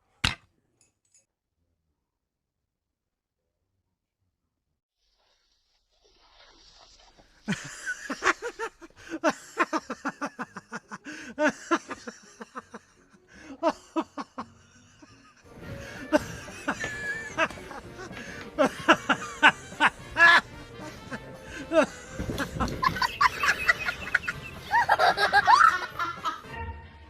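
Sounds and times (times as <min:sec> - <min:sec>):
person laughing: 0:07.5 - 0:26.5
music: 0:09.3 - 0:27.0.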